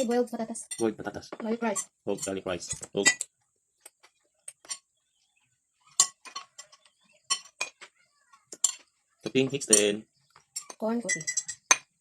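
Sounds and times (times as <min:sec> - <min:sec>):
cutlery clinking on plate: 0:04.5 - 0:04.8, 0:05.9 - 0:07.9, 0:08.5 - 0:10.0, 0:10.6 - 0:11.9.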